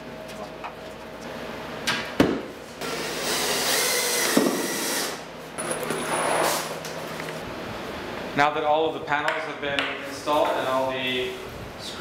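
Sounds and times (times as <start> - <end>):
power drill driving screws: 2.8 - 5.2.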